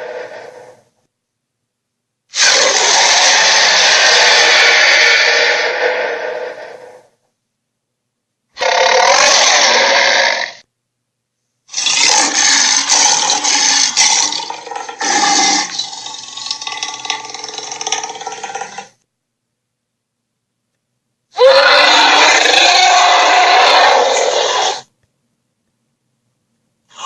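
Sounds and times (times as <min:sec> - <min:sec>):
dinosaur roars and growls: 0:00.0 - 0:00.8, 0:02.4 - 0:07.1, 0:08.6 - 0:10.6, 0:11.8 - 0:18.9, 0:21.4 - 0:24.9.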